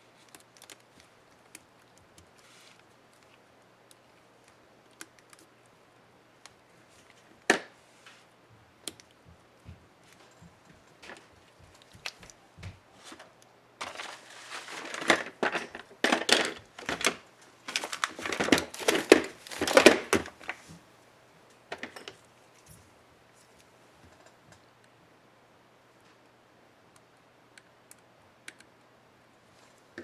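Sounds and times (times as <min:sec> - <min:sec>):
crinkling and scraping: 0:10.0 - 0:20.9, 0:21.7 - 0:24.3.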